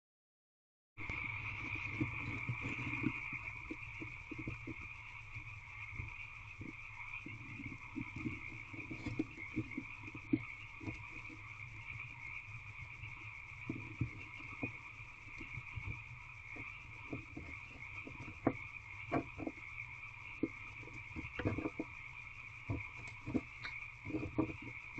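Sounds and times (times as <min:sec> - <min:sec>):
frogs calling: 0:01.0 - 0:24.9.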